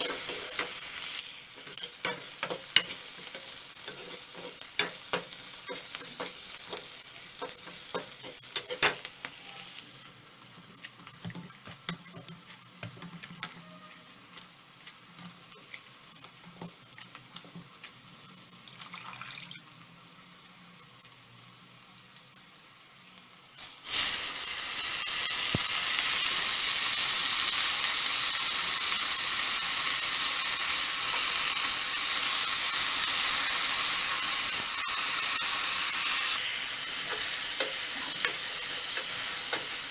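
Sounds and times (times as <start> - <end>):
loud steady sizzle: 0.0 - 39.9
spatula knocking and scraping pan: 1.6 - 9.1, 11.2 - 13.6.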